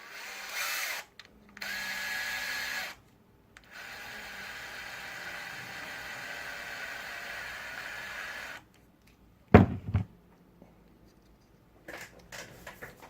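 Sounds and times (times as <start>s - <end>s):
electric screwdriver whirring: 0.0s - 3.0s
faint clicks of parts handled: 8.7s - 9.2s, 10.3s - 13.0s
loud knocks: 9.6s - 10.1s.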